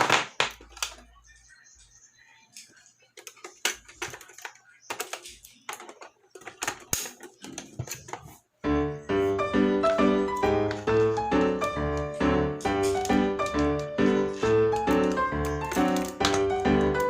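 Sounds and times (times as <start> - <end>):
piano music: 8.6 - 17.0.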